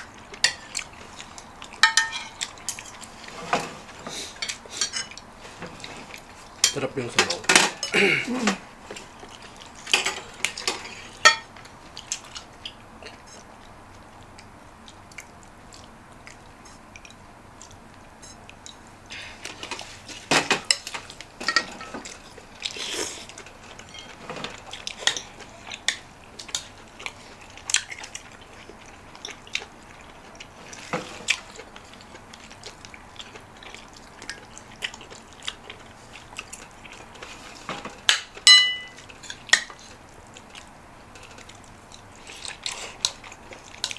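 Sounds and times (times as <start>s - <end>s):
chewing: 0.0s - 6.7s, 8.8s - 43.9s
cutlery clicking on dishes: 0.4s - 0.9s, 1.8s - 3.7s, 6.6s - 8.6s, 9.9s - 11.6s, 19.6s - 22.2s, 37.7s - 39.8s
metal clinking on dish: 1.8s - 2.4s, 10.0s - 11.5s, 38.4s - 39.0s.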